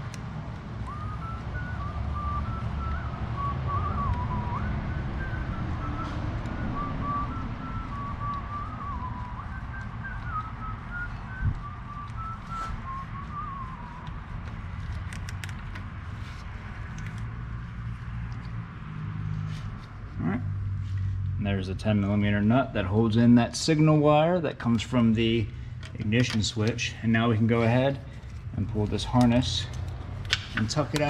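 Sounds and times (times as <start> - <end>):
person whistling a tune: 0.7 - 14.4.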